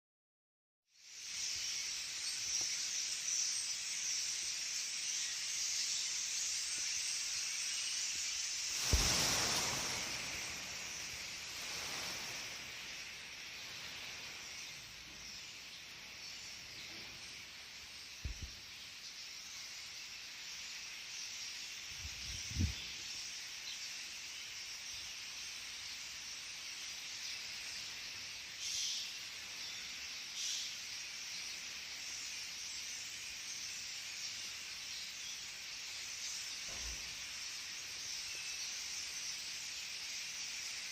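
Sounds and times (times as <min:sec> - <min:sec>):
starlings chattering: 0:01.5 - 0:24.1
sudden loud rush: 0:08.7 - 0:12.6.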